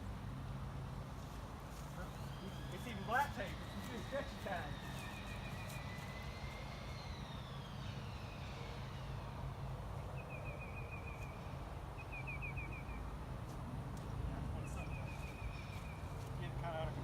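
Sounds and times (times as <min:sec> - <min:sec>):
low engine rumble: 0:00.0 - 0:17.0
faint whine falling in pitch: 0:02.0 - 0:13.1.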